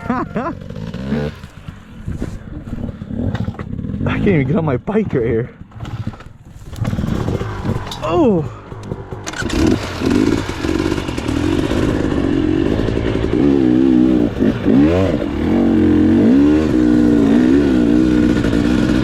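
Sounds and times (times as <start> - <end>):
dirt bike engine revving: 0.0 - 19.0.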